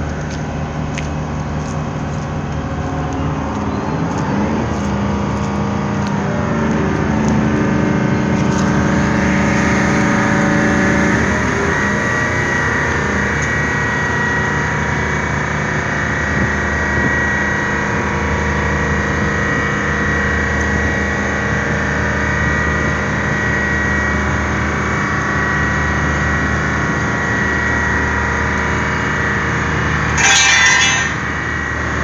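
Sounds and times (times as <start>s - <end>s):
large engine running: 6.6s - 15.7s
high whine: 8.4s - 15.4s.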